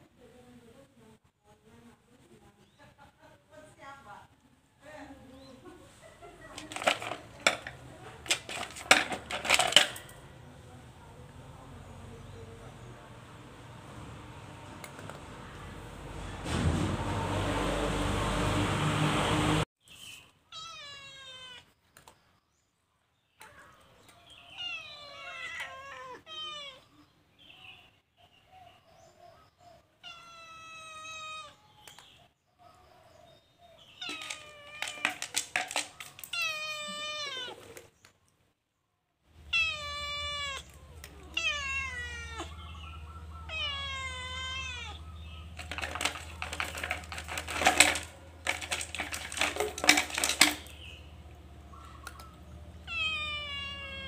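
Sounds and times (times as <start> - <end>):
cat meowing: 20.5 - 21.7, 24.5 - 27.0, 30.0 - 31.6, 36.2 - 37.9, 39.4 - 42.7, 43.4 - 45.2, 52.8 - 54.0.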